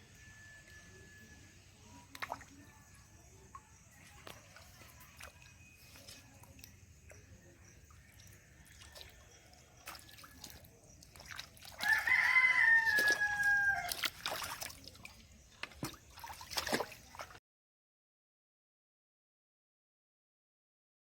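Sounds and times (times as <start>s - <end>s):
water splashes and drips: 1.9s - 17.4s
rooster crowing: 11.8s - 14.0s.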